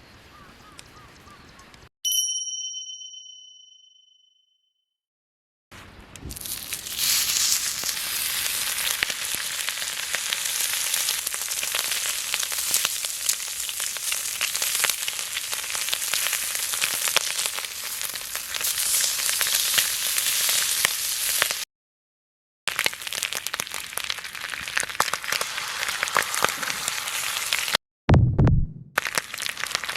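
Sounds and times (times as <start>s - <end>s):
bacon and egg sizzling in a pan: 6.3s - 21.6s, 22.7s - 27.8s, 29.0s - 29.9s.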